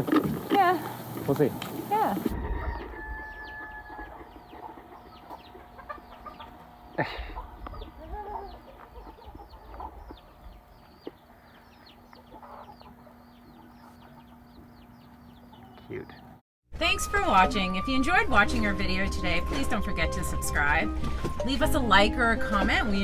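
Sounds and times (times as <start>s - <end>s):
chickens clucking: 0.0s - 16.4s
chicks peeping: 0.6s - 16.4s.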